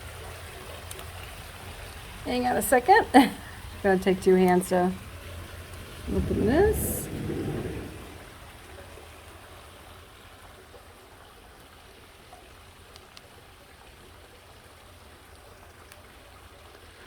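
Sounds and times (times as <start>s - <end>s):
faint hiss of falling water: 0.0s - 17.0s
tiny ticks: 0.8s - 1.2s, 12.9s - 13.3s.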